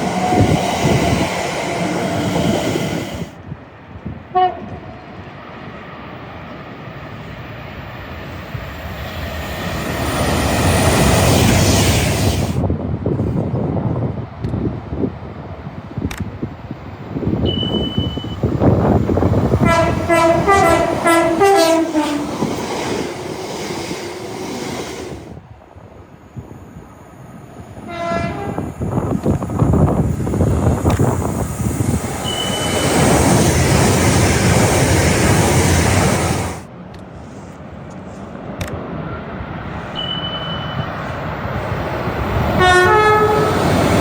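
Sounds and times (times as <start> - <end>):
train rushing by: 0.0 - 44.0
two-tone train horn: 4.3 - 5.0, 17.4 - 18.4, 19.6 - 22.3, 27.8 - 28.7, 42.6 - 43.7.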